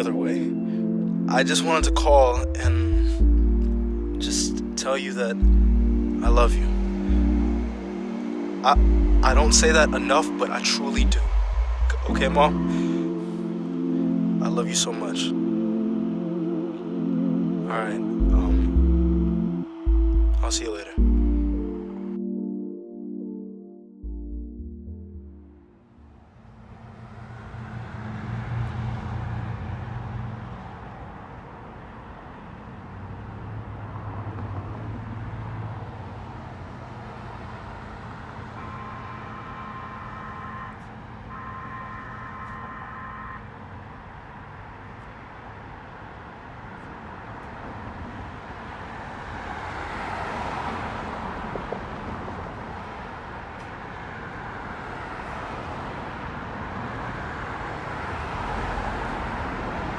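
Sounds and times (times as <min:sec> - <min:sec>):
vehicles passing: 0:00.0 - 0:23.4, 0:24.0 - 0:59.9
pitched tone: 0:00.3 - 0:25.9.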